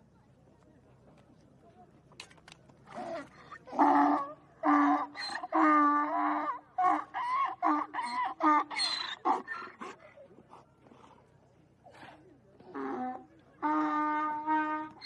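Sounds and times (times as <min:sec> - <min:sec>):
donkey braying: 0:12.7 - 0:15.0.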